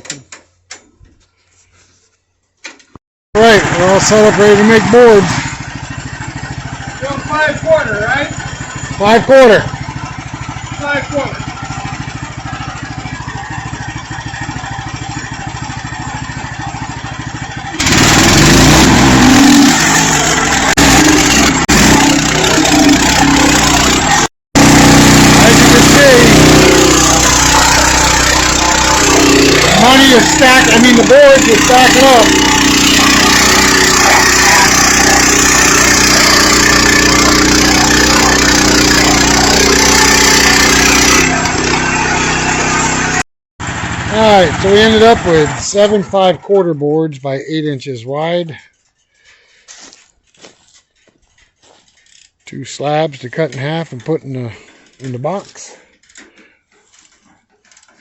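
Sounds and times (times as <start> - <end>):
sawmill engine running: 3.4 - 46.6
sawmill running under load: 3.4 - 46.6.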